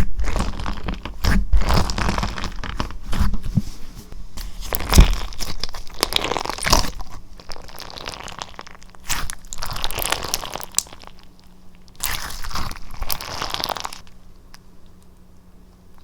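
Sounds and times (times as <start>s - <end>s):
slime squeezed crunching crackles: 0.0s - 3.3s, 4.4s - 14.2s.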